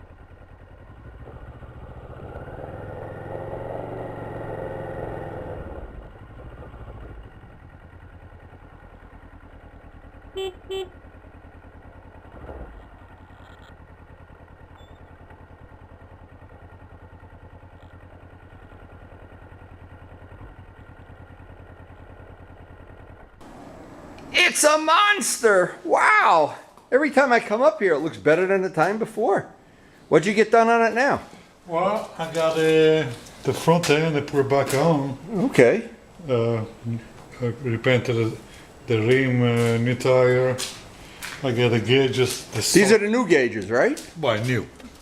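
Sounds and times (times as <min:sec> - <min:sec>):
vehicle engine running: 0:00.0 - 0:25.7, 0:26.3 - 0:45.0
horn beeps: 0:10.3 - 0:11.0.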